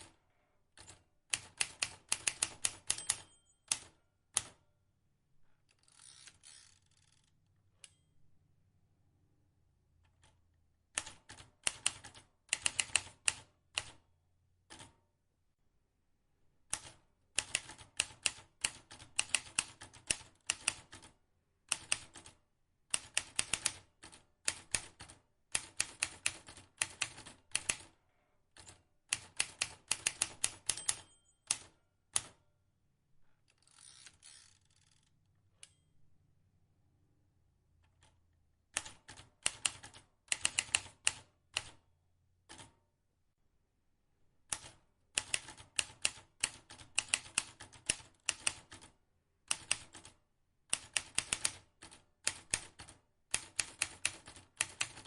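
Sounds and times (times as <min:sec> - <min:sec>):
typewriter key strikes: 0:30.0 - 0:32.3.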